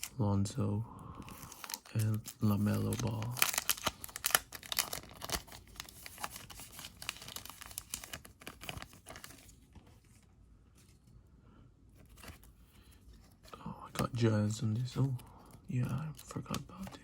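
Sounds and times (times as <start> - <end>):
plastic packaging crinkling: 1.2 - 10.1.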